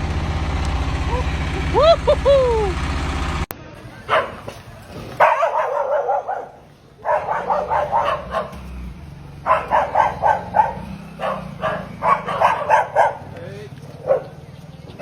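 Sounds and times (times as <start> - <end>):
dog yapping: 5.2 - 8.6, 9.4 - 13.3.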